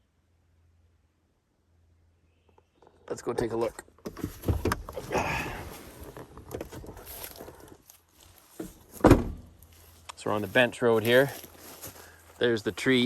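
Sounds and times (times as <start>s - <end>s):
footsteps through undergrowth: 4.3s - 13.0s
loud thump: 9.0s - 9.5s.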